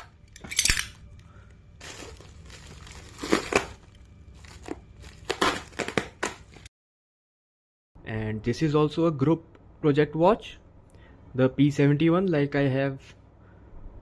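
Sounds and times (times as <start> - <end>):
packaging rustling: 1.8 - 6.7.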